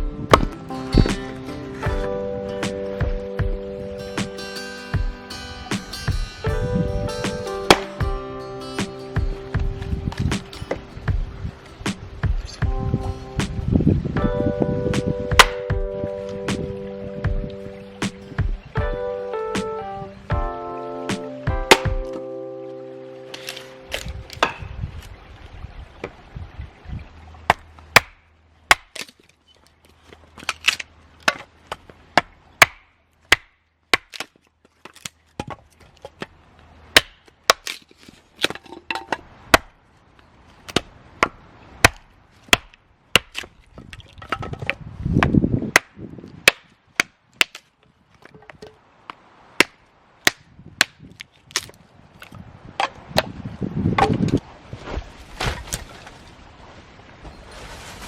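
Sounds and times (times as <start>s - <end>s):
chopping strikes on wood: 0.3s - 1.3s, 15.0s - 15.9s, 21.1s - 22.2s, 27.5s - 29.1s, 32.2s - 34.3s, 37.0s - 37.8s, 39.5s - 39.7s, 40.7s - 43.5s, 45.2s - 47.6s
short rustle: 54.6s - 58.0s.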